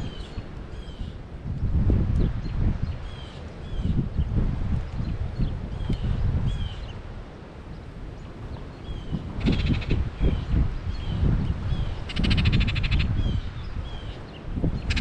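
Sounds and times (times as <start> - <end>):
small birds chirping: 0.0 - 1.2, 2.1 - 15.0.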